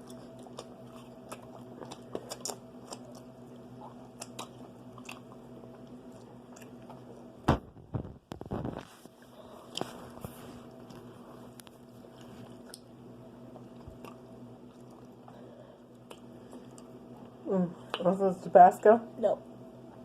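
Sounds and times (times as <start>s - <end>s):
low steady hum: 0.0s - 20.0s.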